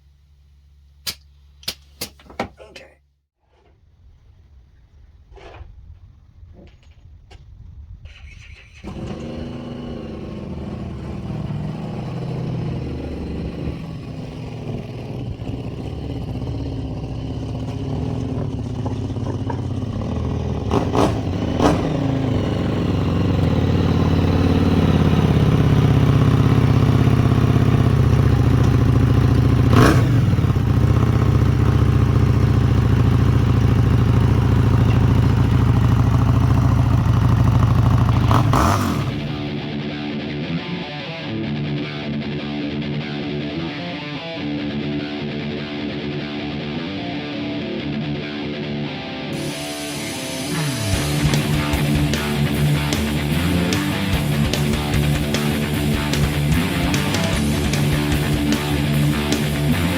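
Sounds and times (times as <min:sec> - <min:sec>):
air compressor running: 0:38.2 - 0:39.6.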